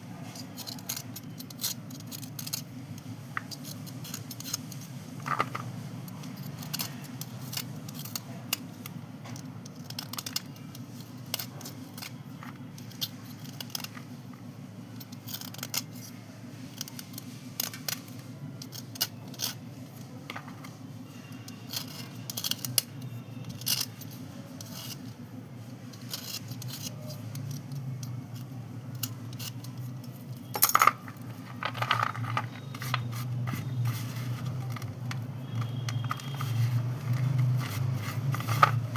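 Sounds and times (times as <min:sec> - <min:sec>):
steady low hum: 0:00.0 - 0:38.9
chalk crunching and clicking: 0:15.0 - 0:38.9.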